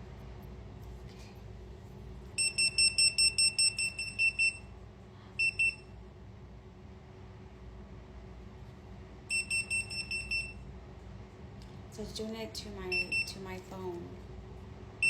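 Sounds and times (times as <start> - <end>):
high-pitched detector beeps: 2.4 - 4.7, 5.4 - 5.8, 9.3 - 10.6.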